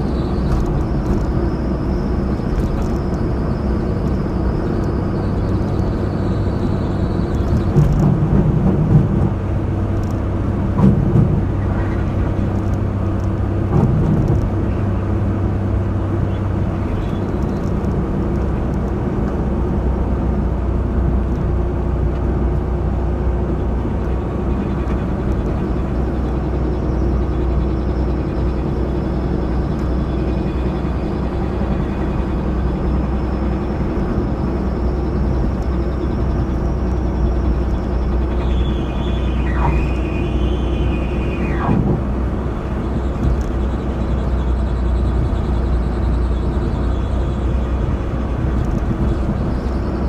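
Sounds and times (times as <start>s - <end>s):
vehicle engine low drone: 0.0s - 50.0s
faint high whine: 26.3s - 50.0s.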